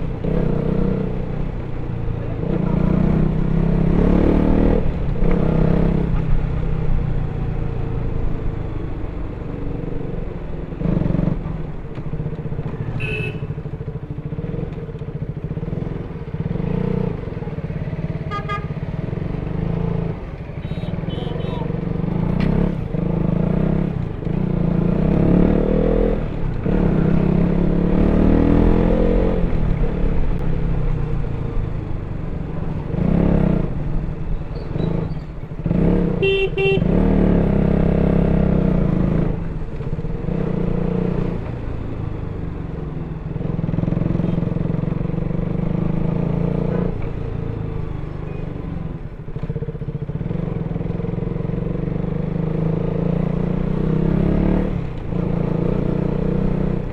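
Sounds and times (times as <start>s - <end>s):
motorcycle engine revving: 0.0s - 56.9s
vehicle horn: 13.0s - 13.7s, 18.2s - 18.8s, 20.6s - 21.7s, 36.2s - 37.1s.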